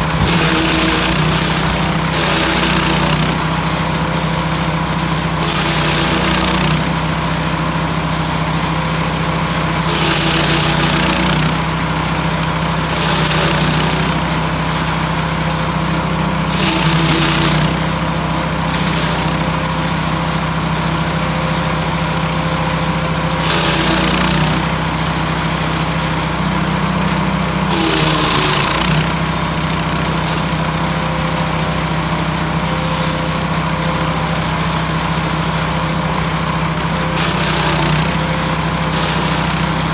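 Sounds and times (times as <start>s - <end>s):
wood chipping bursts: 0.0s - 4.3s, 5.4s - 7.0s, 9.8s - 11.7s, 12.9s - 14.6s, 16.3s - 19.8s, 23.4s - 35.6s, 37.0s - 39.9s
wood chipper engine running: 0.0s - 39.9s.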